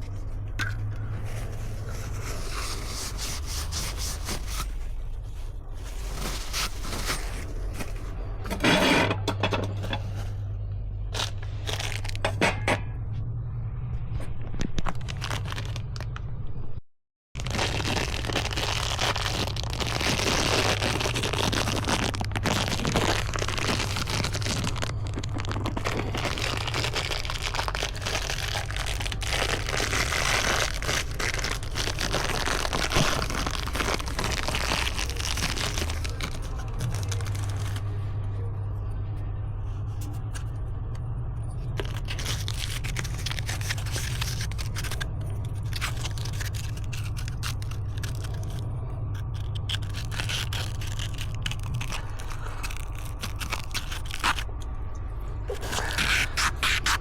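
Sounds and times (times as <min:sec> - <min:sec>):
scraping and rubbing: 0:00.0 - 0:12.6, 0:41.6 - 0:54.7, 0:55.4 - 0:57.0
low steady hum: 0:00.0 - 0:16.8, 0:17.4 - 0:57.0.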